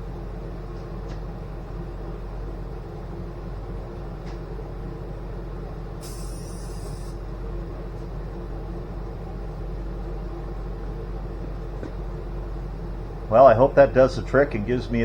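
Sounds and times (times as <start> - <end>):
aerosol spray can hissing: 6.0 - 7.2.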